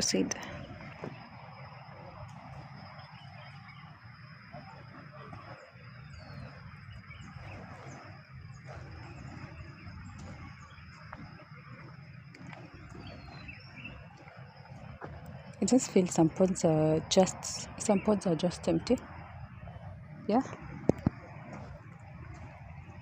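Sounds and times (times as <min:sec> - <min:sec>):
low rumble: 0:00.0 - 0:23.0
bird chirps: 0:02.8 - 0:11.5, 0:12.8 - 0:14.2.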